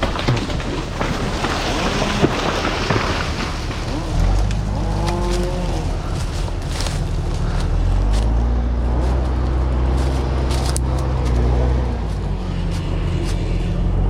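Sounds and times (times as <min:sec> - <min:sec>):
large engine running: 0:00.0 - 0:14.0.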